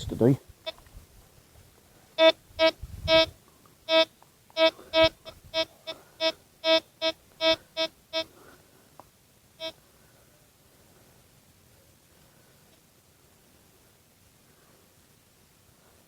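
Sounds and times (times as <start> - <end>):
metal detector short beeps: 2.2 - 3.3, 3.9 - 8.3.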